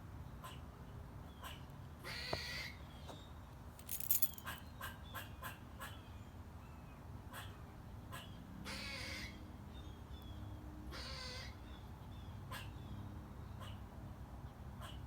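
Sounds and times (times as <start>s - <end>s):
squirrel harsh raspy call: 7.3s - 9.4s, 10.9s - 11.5s.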